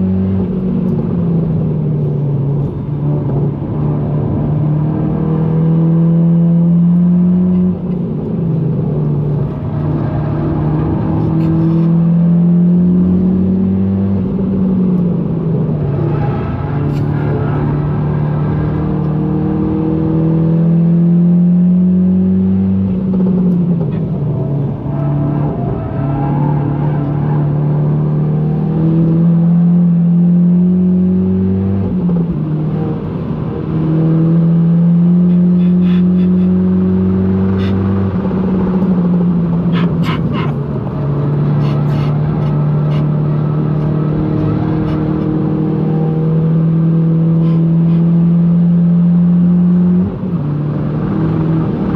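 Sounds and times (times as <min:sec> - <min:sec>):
car engine accelerating hard: 0:00.0 - 0:51.9.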